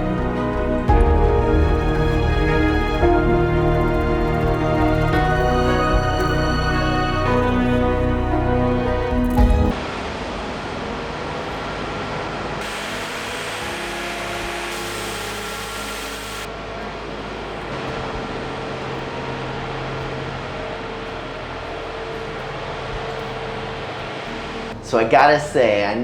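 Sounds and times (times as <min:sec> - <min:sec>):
generator engine humming: 0:00.0 - 0:09.7.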